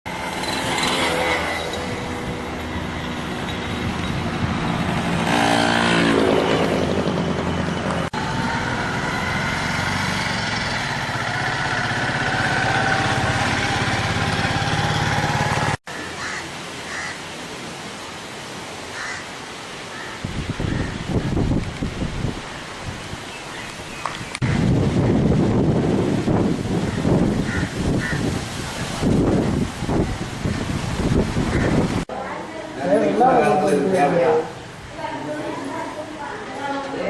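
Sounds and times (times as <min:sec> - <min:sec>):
motor vehicles passing: 0:00.1 - 0:16.4, 0:23.7 - 0:37.0.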